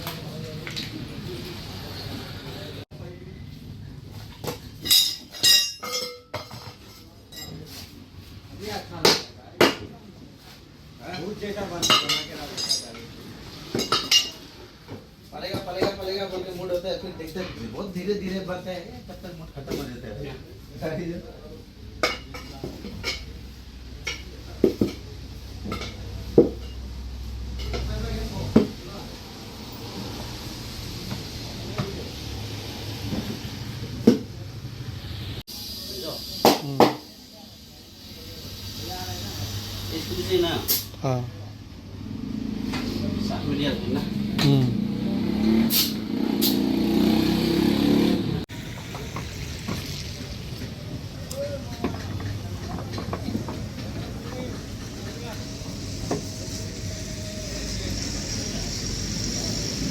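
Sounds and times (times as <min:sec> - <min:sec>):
street noise: 0:00.0 - 0:59.9
metal tools clanking on wheel rim: 0:04.3 - 0:07.9, 0:11.2 - 0:14.5
small motorbike engine running: 0:54.6 - 0:59.9.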